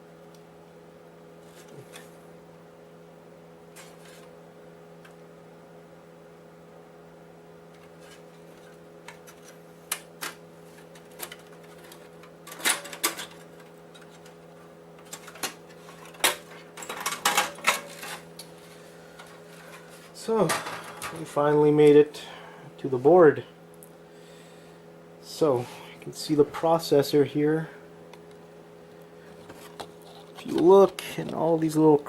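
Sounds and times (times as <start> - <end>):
steady background hum: 0.0 - 32.0
parts clinking and clattering: 7.8 - 14.4, 15.0 - 18.2, 20.4 - 21.4.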